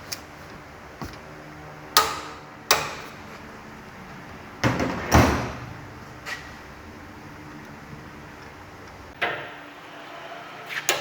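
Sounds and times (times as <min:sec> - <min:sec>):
metal knocks clattering: 0:04.6 - 0:05.8.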